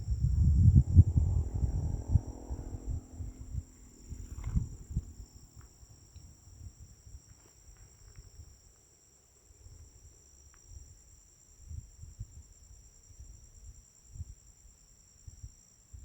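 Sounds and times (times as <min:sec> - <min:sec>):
low uneven rumble: 0:00.0 - 0:06.8
insect chorus: 0:00.0 - 0:16.0.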